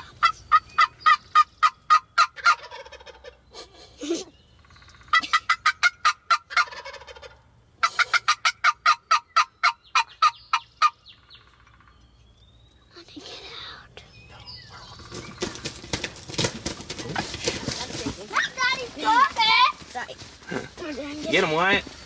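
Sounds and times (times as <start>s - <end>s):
turkey yelps: 0.0s - 3.7s, 4.7s - 11.9s
turkey gobbling: 0.0s - 3.8s, 4.6s - 12.0s, 14.8s - 22.0s.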